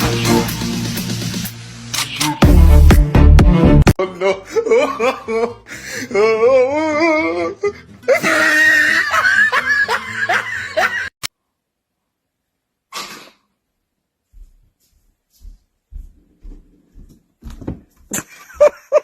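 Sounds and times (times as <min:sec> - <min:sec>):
background music: 0:00.0 - 0:11.1
laughter: 0:04.0 - 0:06.5, 0:08.1 - 0:11.2, 0:18.1 - 0:19.0.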